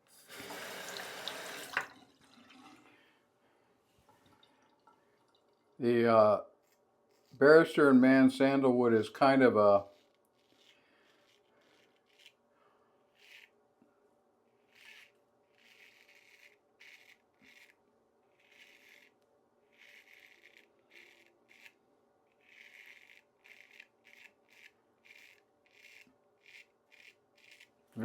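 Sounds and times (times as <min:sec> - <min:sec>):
straight razor scraping stubble: 0:06.6 - 0:12.4, 0:13.1 - 0:13.6, 0:14.6 - 0:28.0.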